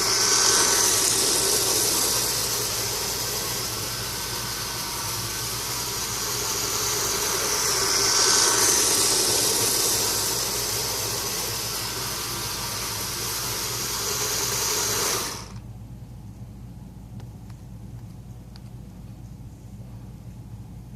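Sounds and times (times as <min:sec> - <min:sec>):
toy train motor whirring: 0:00.0 - 0:15.6.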